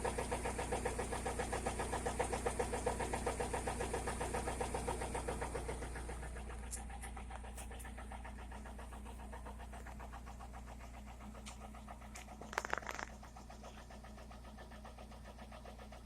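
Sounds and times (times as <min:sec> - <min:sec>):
car engine knocking: 0:00.0 - 0:16.0
brief clatter: 0:12.2 - 0:13.2.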